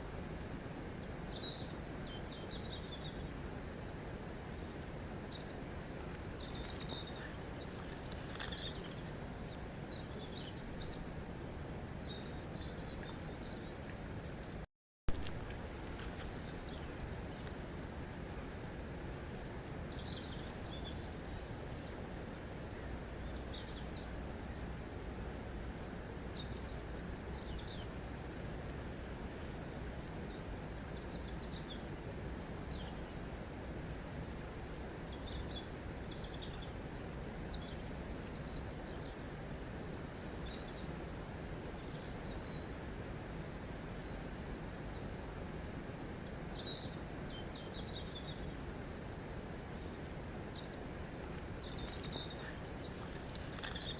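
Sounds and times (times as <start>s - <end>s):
small birds chirping: 4.0s - 14.6s, 19.6s - 21.2s, 46.0s - 53.9s.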